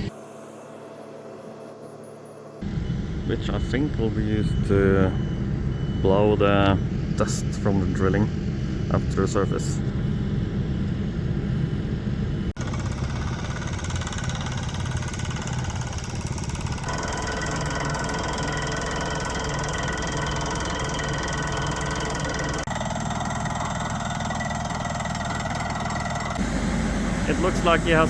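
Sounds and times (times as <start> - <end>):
air compressor running: 12.6 - 28.0
drilling rig running: 12.6 - 28.0.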